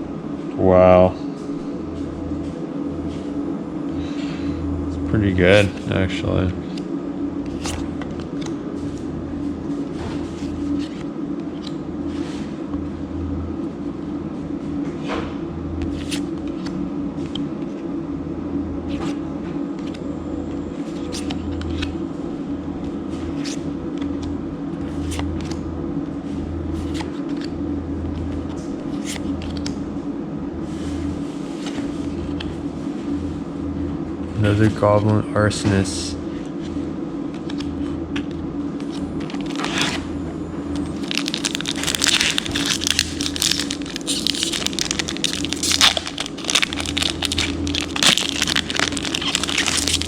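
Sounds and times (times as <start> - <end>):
steady low hum: 0.0 - 50.0
cards being flicked through: 41.0 - 50.0.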